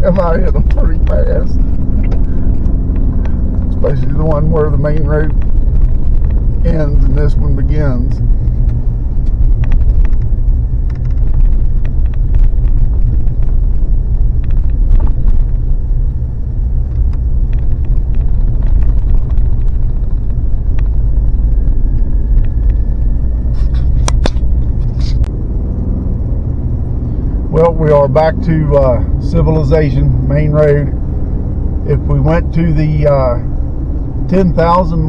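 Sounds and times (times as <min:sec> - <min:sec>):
vehicle road rumble: 0:00.0 - 0:35.0
small rattles and knocks: 0:08.4 - 0:15.7.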